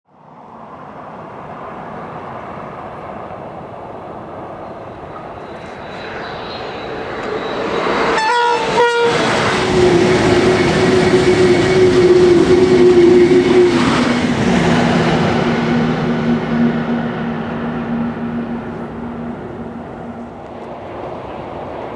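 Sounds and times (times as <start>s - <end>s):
train passing at speed: 0.1s - 21.9s
train horn blasts: 8.0s - 20.4s.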